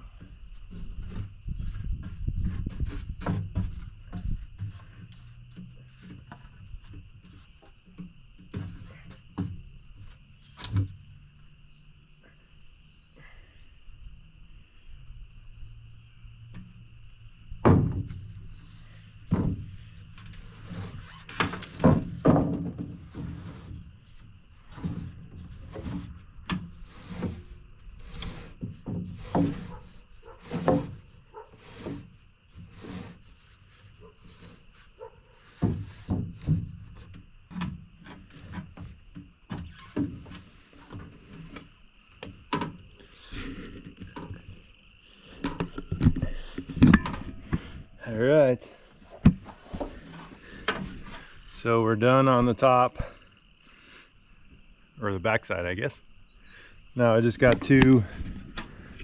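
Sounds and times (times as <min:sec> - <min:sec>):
wooden boards knocking and thudding: 0:00.2 - 0:10.0, 0:17.5 - 0:18.5, 0:19.2 - 0:23.9, 0:28.3 - 0:32.1, 0:35.5 - 0:42.9, 0:45.4 - 0:47.8, 0:49.1 - 0:51.2.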